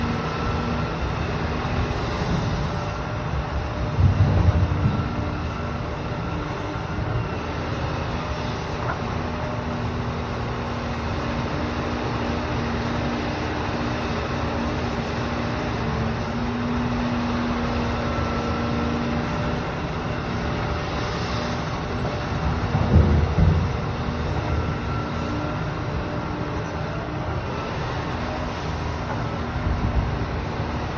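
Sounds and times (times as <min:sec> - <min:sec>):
heavy diesel engines running: 0:00.0 - 0:30.9.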